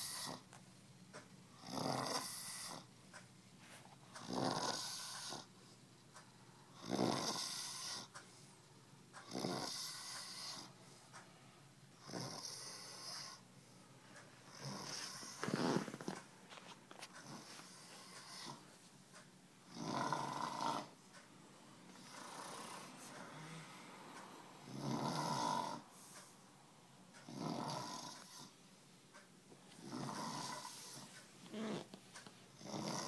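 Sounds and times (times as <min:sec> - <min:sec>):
quiet breaths: 0:00.0 - 0:33.0
person snoring: 0:01.6 - 0:02.9, 0:04.2 - 0:05.5, 0:06.7 - 0:08.1, 0:09.2 - 0:10.7, 0:12.0 - 0:13.4, 0:14.5 - 0:16.1, 0:19.7 - 0:20.9, 0:22.0 - 0:23.9, 0:24.6 - 0:25.8, 0:27.2 - 0:28.5, 0:29.8 - 0:31.9, 0:32.6 - 0:33.0.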